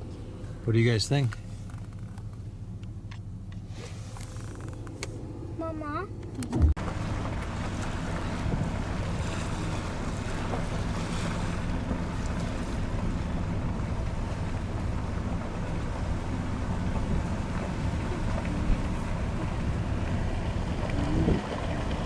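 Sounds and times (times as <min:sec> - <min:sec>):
low motor hum: 0:00.0 - 0:22.0
wind noise: 0:16.1 - 0:22.0.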